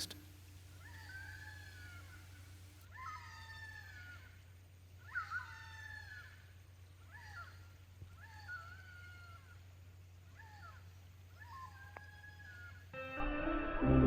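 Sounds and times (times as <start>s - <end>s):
fish eagle wailing calls: 0.8s - 4.3s.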